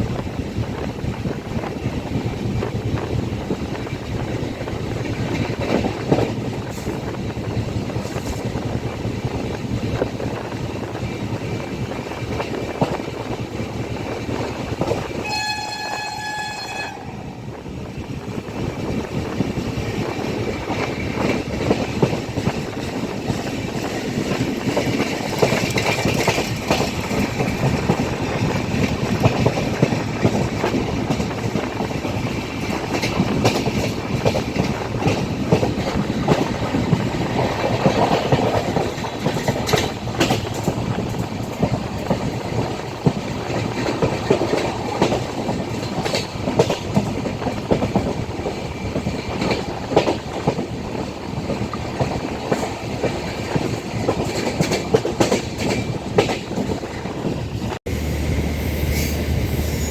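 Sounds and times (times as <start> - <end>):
train rumbling over rails: 0.0 - 59.9
train horn: 15.2 - 17.4.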